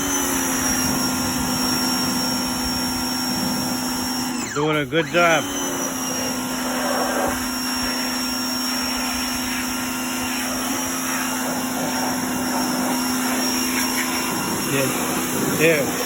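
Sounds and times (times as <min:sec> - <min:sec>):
pressure washer motor humming: 0:00.0 - 0:16.0
water spray hiss: 0:06.2 - 0:16.0.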